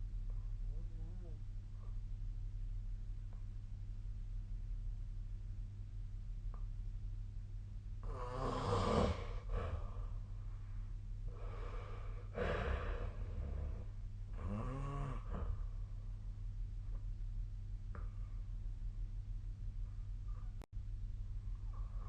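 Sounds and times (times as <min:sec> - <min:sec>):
person snoring: 0:08.0 - 0:10.2, 0:11.3 - 0:15.7.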